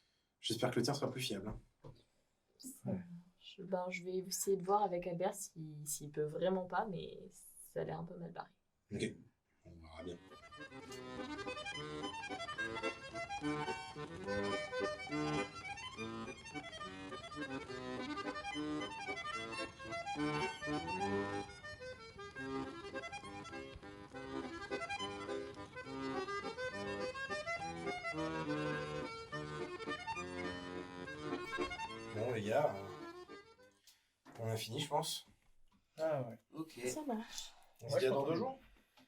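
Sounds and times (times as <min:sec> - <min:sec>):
accordion music: 0:09.9 - 0:35.2, 0:37.9 - 0:38.6.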